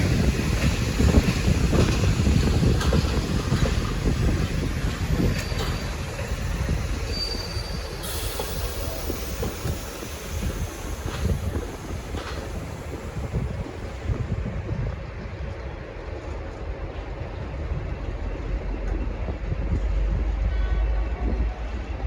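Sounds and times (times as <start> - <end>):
wheels clicking over rail joints: 0.0 - 16.7
train wheels rumbling on rails: 0.0 - 22.0
high wheel squeal: 4.3 - 13.6.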